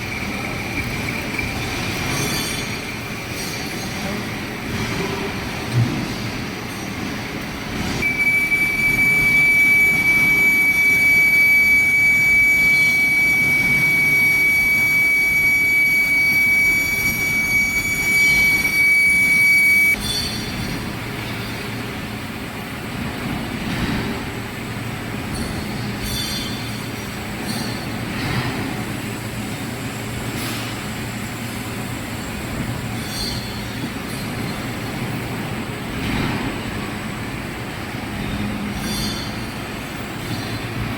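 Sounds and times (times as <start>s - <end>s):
lathe running: 8.0s - 20.0s
lathe tool squealing: 8.0s - 20.5s.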